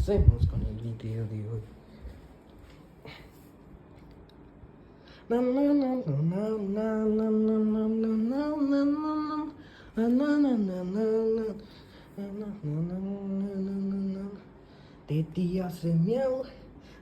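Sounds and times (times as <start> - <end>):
person singing slow tune: 5.0 - 17.0.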